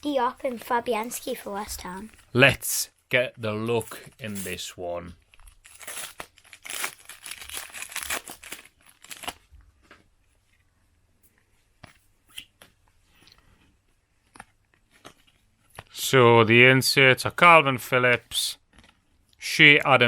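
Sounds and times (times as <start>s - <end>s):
cards rustling faintly: 0.1s - 2.4s
card pack wrapper tearing: 5.3s - 9.5s.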